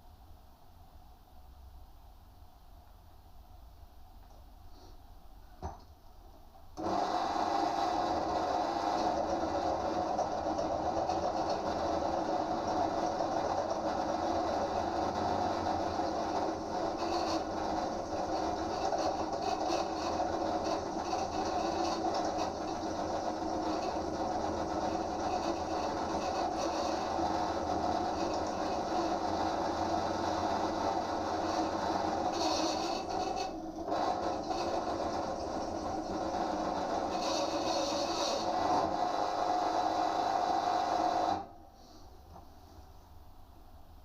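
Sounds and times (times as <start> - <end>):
pillar drill drilling steel: 6.8 - 41.5.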